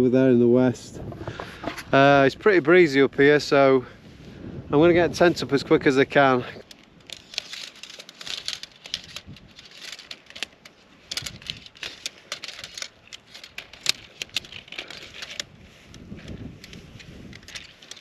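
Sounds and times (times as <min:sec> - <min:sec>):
tent fabric rustling and crinkling: 0:05.4 - 0:18.0.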